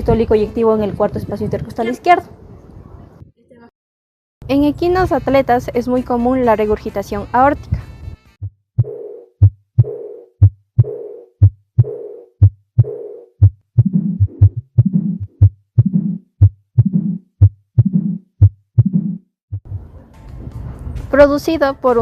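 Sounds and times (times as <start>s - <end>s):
heart beating: 8.4s - 19.8s
heart murmur: 8.4s - 19.8s.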